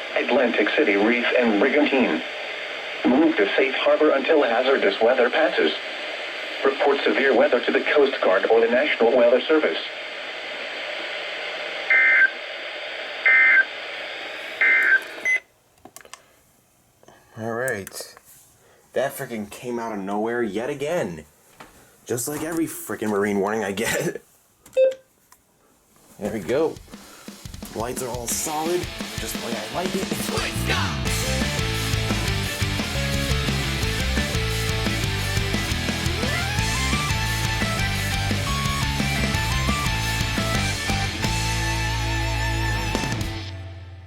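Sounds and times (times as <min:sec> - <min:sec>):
steady radio hiss: 0:00.0 - 0:15.4, 0:16.1 - 0:24.6, 0:25.6 - 0:32.1
rock music with guitar and drums: 0:26.8 - 0:44.0.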